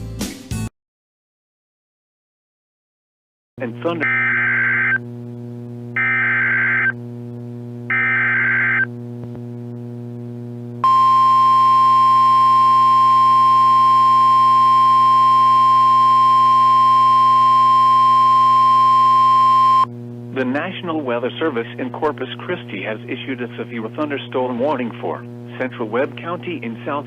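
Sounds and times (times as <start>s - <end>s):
steady low hum: 3.6s - 27.0s
steady warning alarm tone: 10.8s - 19.9s.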